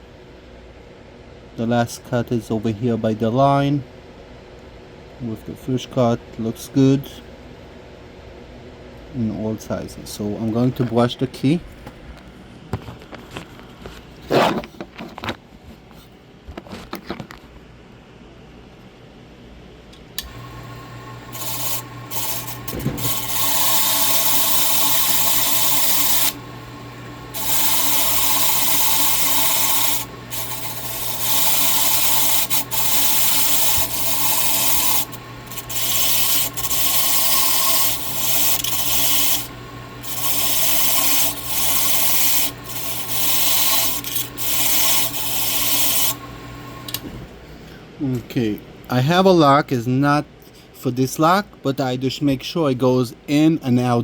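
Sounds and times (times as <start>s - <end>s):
brush motor humming: 20.2s - 47.0s.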